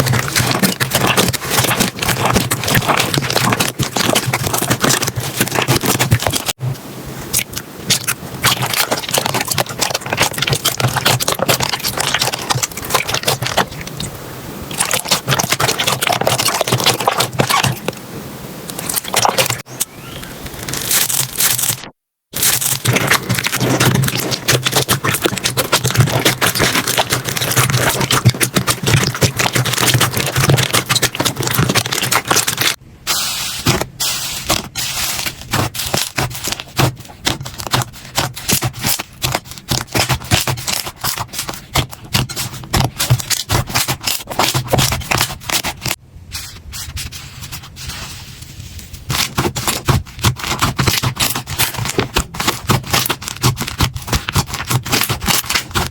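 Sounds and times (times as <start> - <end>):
slime squeezed by hand: 14.7 - 17.9.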